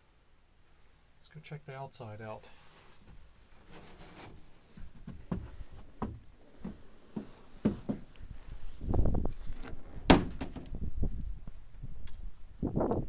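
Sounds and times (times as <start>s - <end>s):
knocks and rattles: 3.9s - 8.1s.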